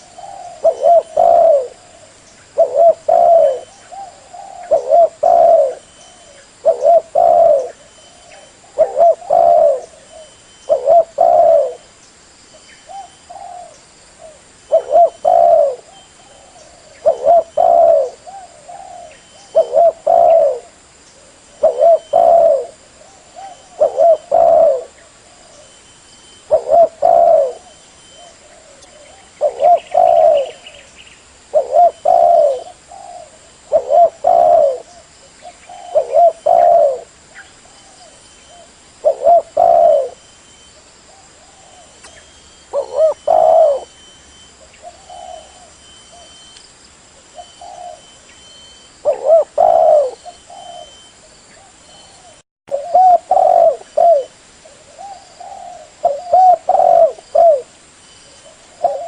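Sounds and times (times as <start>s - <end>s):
dove cooing: 0.0s - 11.9s, 12.9s - 25.8s, 26.4s - 40.3s, 41.1s - 46.5s, 47.3s - 59.0s.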